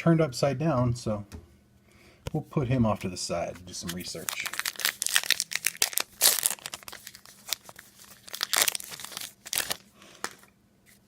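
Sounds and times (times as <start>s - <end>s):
card pack wrapper crinkling: 3.8s - 11.0s.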